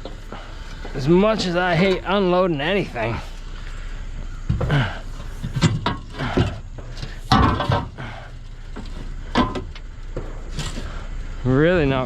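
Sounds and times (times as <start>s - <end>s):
scrap metal knocks and clatters: 4.4s - 11.0s.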